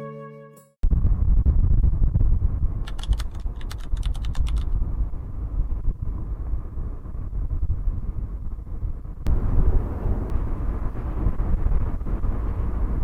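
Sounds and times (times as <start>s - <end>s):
low outdoor rumble: 0.8s - 13.0s
sharp clicks: 2.8s - 4.8s.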